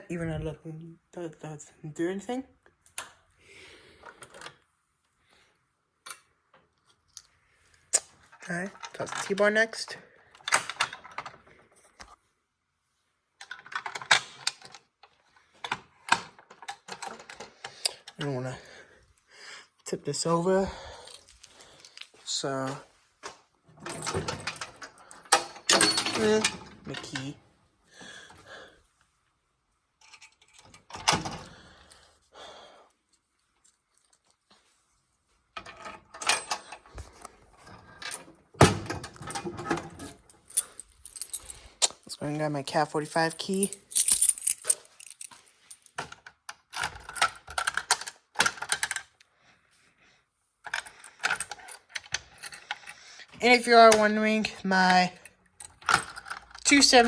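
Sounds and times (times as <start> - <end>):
keys jangling: 23.8 - 27.2, 39.1 - 41.9, 43.0 - 49.0, 50.7 - 53.0, 54.9 - 57.0.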